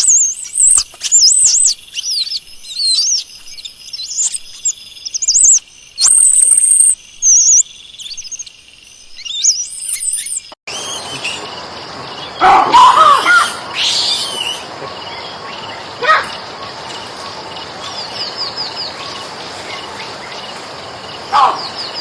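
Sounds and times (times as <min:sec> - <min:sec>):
monkeys whistling: 0:10.7 - 0:19.2
monkeys squealing: 0:12.4 - 0:16.4.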